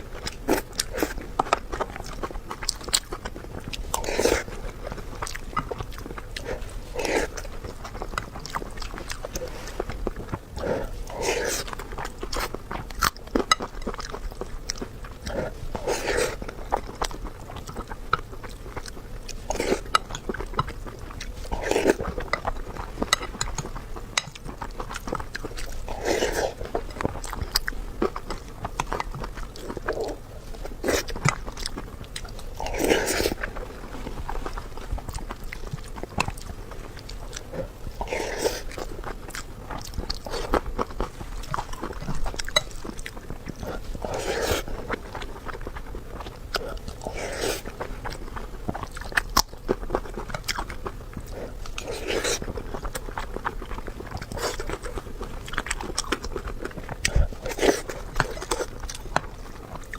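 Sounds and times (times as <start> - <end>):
person chewing and biting food: 0.0 - 59.9.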